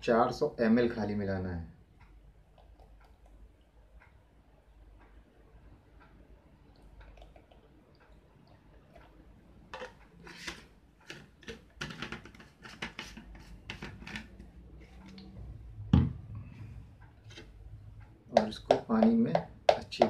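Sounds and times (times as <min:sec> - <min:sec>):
spoon stirring and scraping in bowl: 0:09.0 - 0:15.4.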